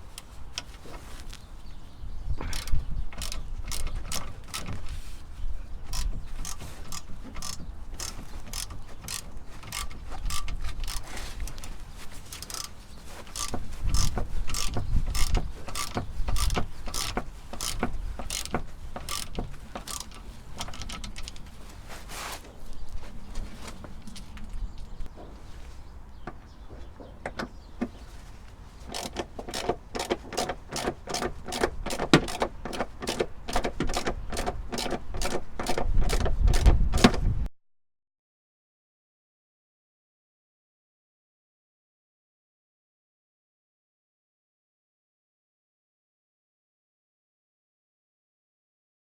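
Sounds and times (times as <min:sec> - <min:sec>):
ratchet wrench clicking: 0:02.5 - 0:04.8, 0:05.9 - 0:11.7, 0:12.3 - 0:21.4, 0:28.9 - 0:37.1.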